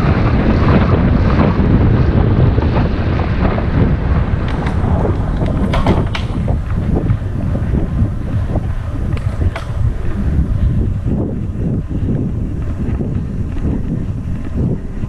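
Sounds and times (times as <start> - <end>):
wind buffeting microphone: 0.0 - 15.0
short crackles: 4.4 - 7.3.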